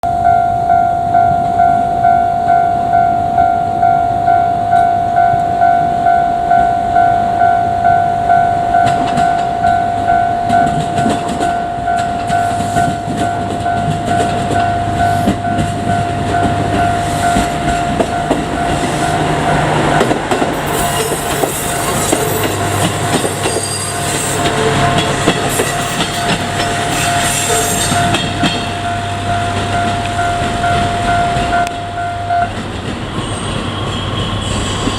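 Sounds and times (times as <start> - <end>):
level-crossing warning bell: 0.0 - 34.9
diesel railcar engine running: 0.1 - 34.9
train wheels clattering over joints: 10.4 - 28.9
hissing squealing rush: 20.5 - 28.8, 32.9 - 34.9.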